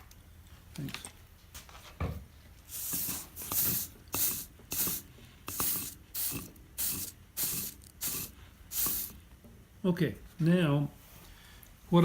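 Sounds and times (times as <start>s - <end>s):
soldering iron sizzling on sponge: 2.7s - 9.2s.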